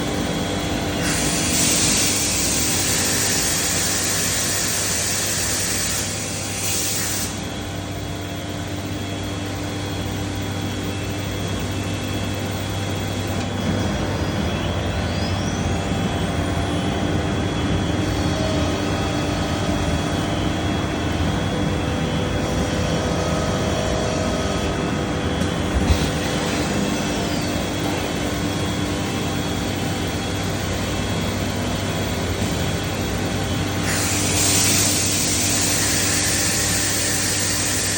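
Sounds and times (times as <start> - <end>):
router machine whining: 22.2 - 37.9.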